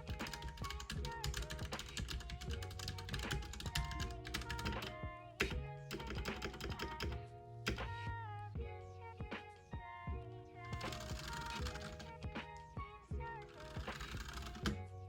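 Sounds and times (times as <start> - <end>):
mechanical keyboard key clicks: 0.2 - 7.9.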